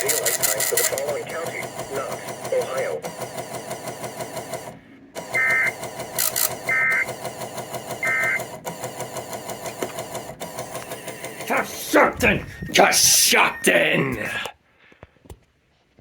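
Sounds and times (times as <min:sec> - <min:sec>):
receiver hiss and hum: 0:00.0 - 0:03.0, 0:05.3 - 0:05.7
buzzy digital tone bursts: 0:05.3 - 0:05.8, 0:06.6 - 0:07.1, 0:08.0 - 0:08.4, 0:11.1 - 0:14.4.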